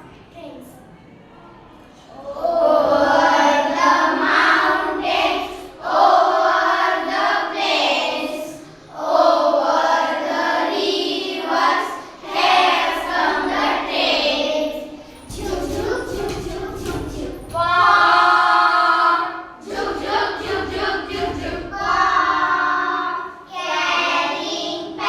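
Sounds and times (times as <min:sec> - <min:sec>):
children singing in unison: 0:02.1 - 0:25.0.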